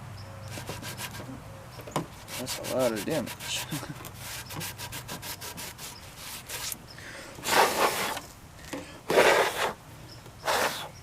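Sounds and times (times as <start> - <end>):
rag scrubbing a surface: 2.2 - 6.8, 7.4 - 8.2, 9.1 - 9.8, 10.4 - 10.9.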